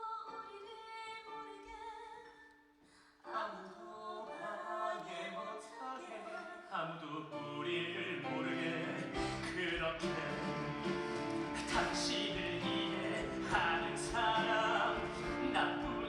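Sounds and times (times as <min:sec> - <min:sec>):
stage musical music: 0:03.4 - 0:16.0.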